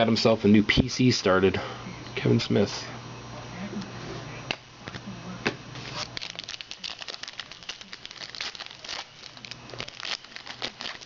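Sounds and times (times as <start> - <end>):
foil wrapper crinkling and tearing: 5.9 - 11.0.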